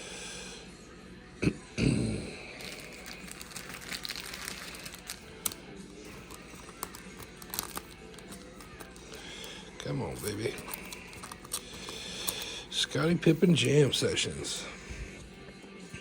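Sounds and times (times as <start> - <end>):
cards and wrappers crinkling: 2.6 - 14.6.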